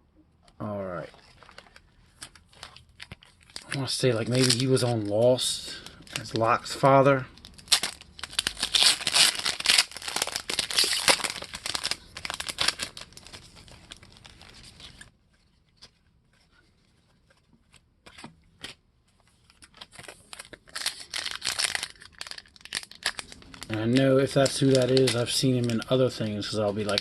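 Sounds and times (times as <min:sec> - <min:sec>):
wrapper tearing and crinkling: 0:01.1 - 0:05.1, 0:07.3 - 0:15.1, 0:19.5 - 0:27.0.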